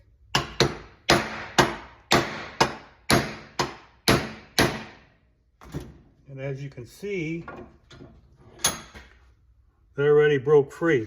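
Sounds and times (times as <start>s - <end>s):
hammer striking metal: 0.3s - 5.0s.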